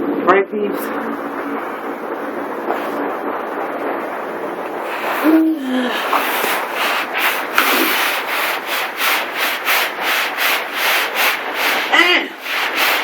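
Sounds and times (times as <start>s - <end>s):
scrub brush scrubbing ground: 4.9s - 13.0s.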